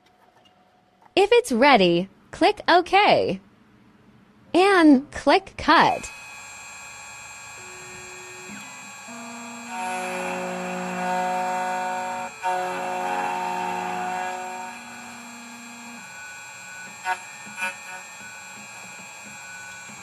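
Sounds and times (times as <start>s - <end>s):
key cutting machine motors whining: 6.0s - 20.0s.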